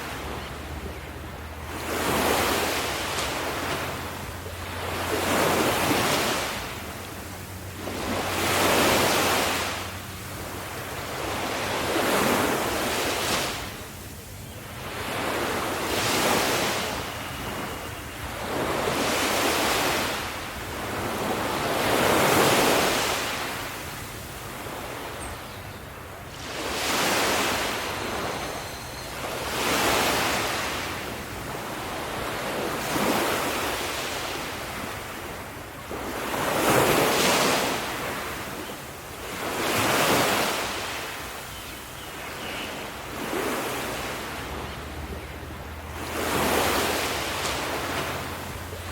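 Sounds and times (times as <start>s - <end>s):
ocean waves breaking on shore: 0.0s - 48.9s.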